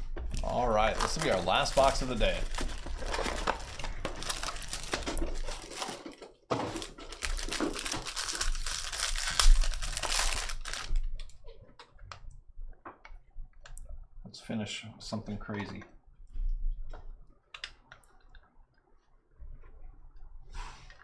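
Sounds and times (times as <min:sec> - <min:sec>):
card packs torn and crinkled: 0:00.3 - 0:11.3.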